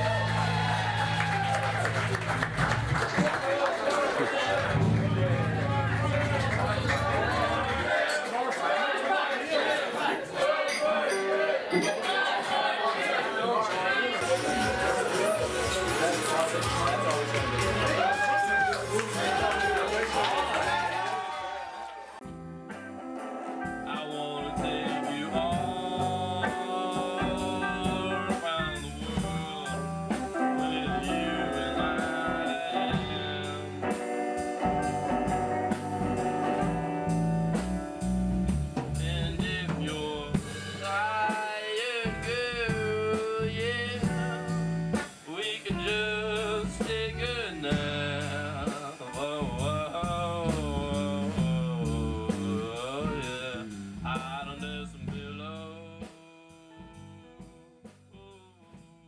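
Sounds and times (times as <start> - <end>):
drum kit beat: 0.0 - 3.4, 4.4 - 8.1, 14.2 - 21.3, 22.2 - 57.1
blues-rock song: 4.4 - 8.0, 22.2 - 58.7
bending lead melody: 4.7 - 7.9.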